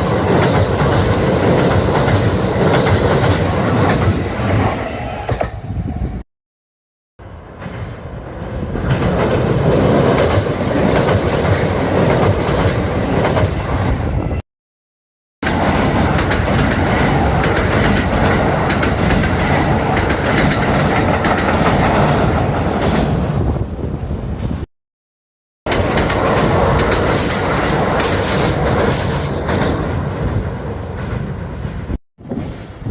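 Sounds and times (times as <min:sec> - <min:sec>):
electric train passing: 0:15.5 - 0:24.4, 0:25.7 - 0:32.9.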